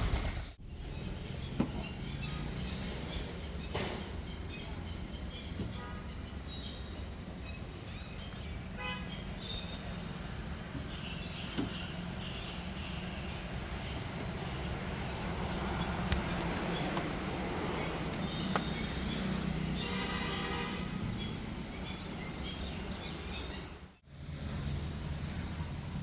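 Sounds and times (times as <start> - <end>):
traffic noise: 0.0 - 26.0
car horn toots: 19.8 - 21.0.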